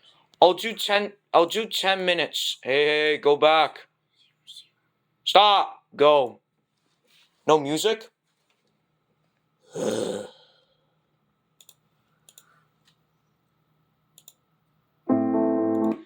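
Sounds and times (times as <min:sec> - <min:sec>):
faint clicks: 0:11.6 - 0:14.4.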